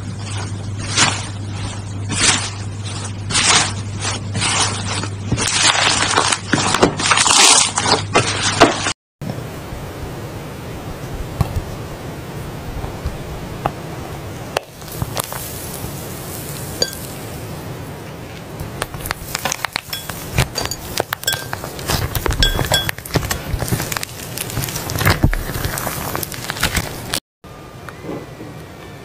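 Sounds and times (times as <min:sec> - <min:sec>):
hard objects clinking: 0:16.4 - 0:17.2, 0:18.8 - 0:27.2.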